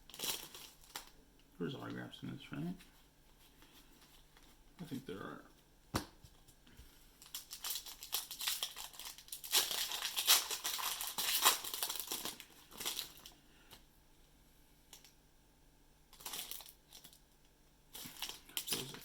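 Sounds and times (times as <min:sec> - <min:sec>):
wrapper crinkling and tearing: 0:00.1 - 0:01.2, 0:07.2 - 0:13.4, 0:16.1 - 0:17.2, 0:17.9 - 0:19.0.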